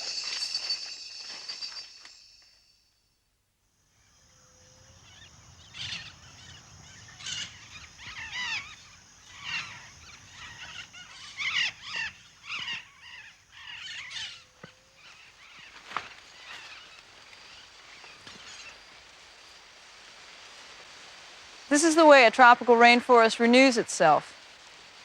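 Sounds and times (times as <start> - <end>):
high insect buzz: 0.0 - 2.9.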